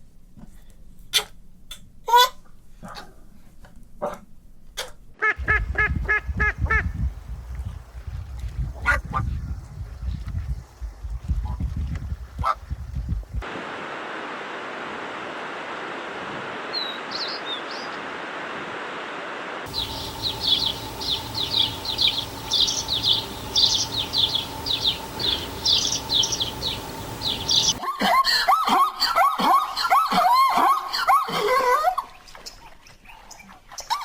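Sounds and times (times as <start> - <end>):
outdoor background noise: 0.0 - 28.2
small birds chirping: 16.7 - 18.0, 19.7 - 27.8
lower bird calls bending in pitch: 19.7 - 27.8.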